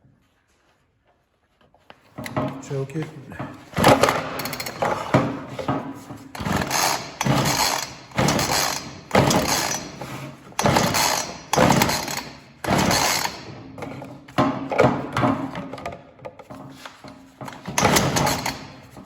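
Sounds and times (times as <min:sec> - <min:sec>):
chainsaw starter cord pulls: 0:03.8 - 0:05.2, 0:06.3 - 0:14.0, 0:17.5 - 0:18.8.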